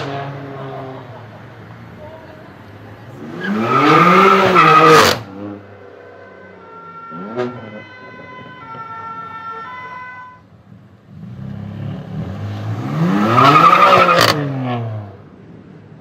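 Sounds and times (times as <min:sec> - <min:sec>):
car engine revving hard: 0:03.2 - 0:05.6, 0:11.2 - 0:15.1
siren-like tone shifting pitch: 0:06.3 - 0:10.4.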